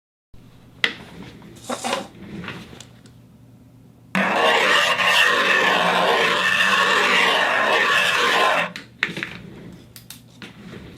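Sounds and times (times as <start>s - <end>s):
turntable rubbing noise: 4.2s - 8.8s.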